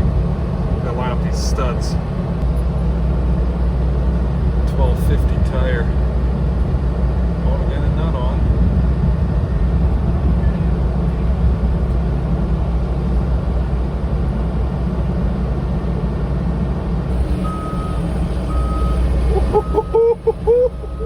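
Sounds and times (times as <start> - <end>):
truck engine running: 0.0 - 21.0
wavering hoot-like calls: 17.3 - 21.0.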